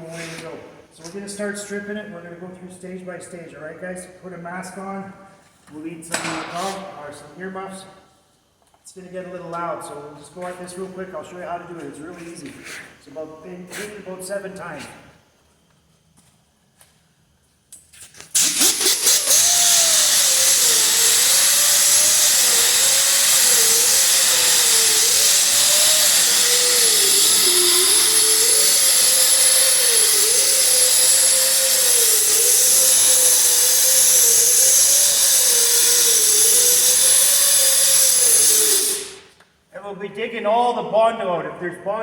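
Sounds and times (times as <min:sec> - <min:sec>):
power sander whining: 0:18.4 - 0:39.2.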